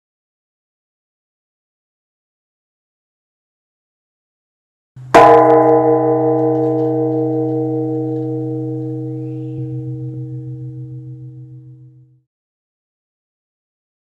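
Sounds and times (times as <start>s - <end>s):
large temple bell ringing: 5.2s - 12.2s.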